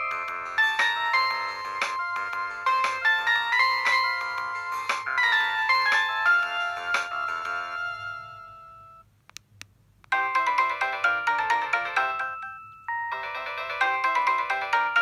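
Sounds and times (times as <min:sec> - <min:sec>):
polyphonic ringtone melody: 0:00.0 - 0:09.1, 0:10.1 - 0:15.0
short clicks: 0:09.2 - 0:10.2.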